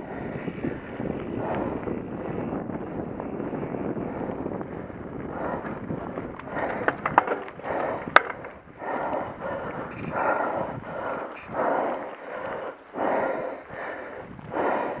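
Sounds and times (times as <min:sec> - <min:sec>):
person breathing hard: 0:00.0 - 0:02.4, 0:03.8 - 0:15.0
bike clicks: 0:00.2 - 0:13.0.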